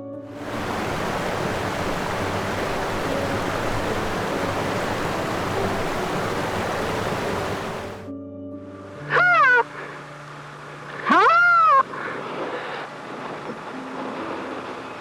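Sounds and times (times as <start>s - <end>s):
faint background music: 0.0s - 15.0s
steady rushing noise: 0.4s - 8.1s.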